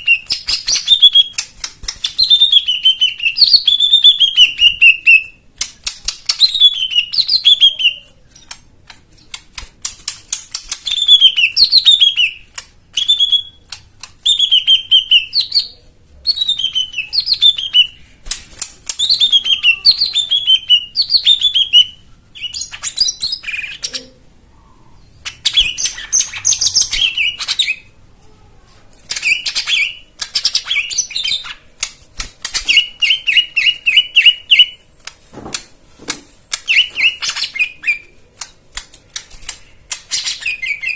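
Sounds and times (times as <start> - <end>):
dry clicking bird chatter: 0.0 - 24.2, 25.1 - 27.9
songbird singing: 19.0 - 28.0.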